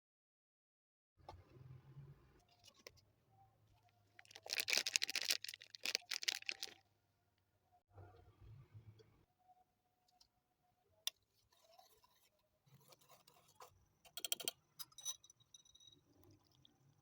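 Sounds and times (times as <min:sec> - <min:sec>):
clicks of small hard objects: 0:04.2 - 0:06.8.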